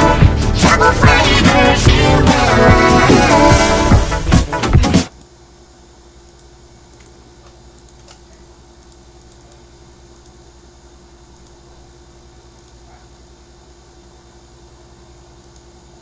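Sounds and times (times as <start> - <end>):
low electrical hum: 0.0 - 16.0
faint computer clicks: 6.2 - 10.4, 11.3 - 11.6, 12.5 - 12.8, 15.4 - 15.8.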